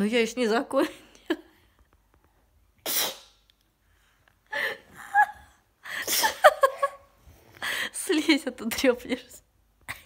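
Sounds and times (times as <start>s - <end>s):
person sneezing: 2.8s - 3.4s.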